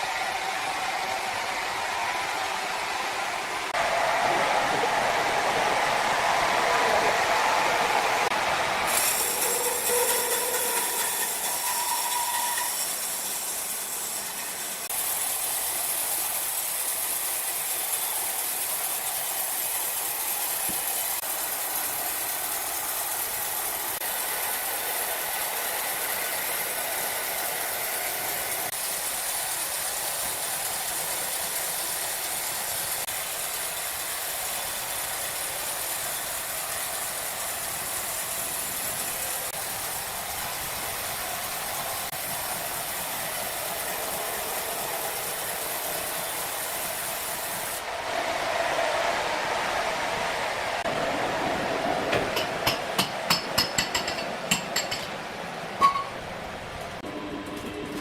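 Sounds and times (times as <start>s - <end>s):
sawmill machinery hissing: 0.0s - 58.0s.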